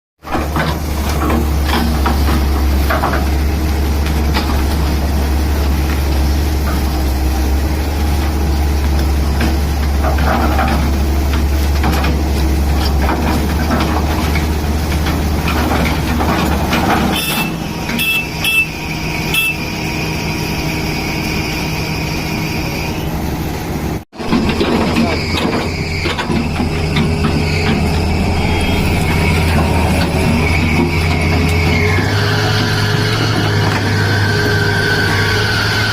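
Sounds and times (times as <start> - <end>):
excavator diesel engine rumble: 0.2 - 35.9
steady high whine: 25.0 - 35.9.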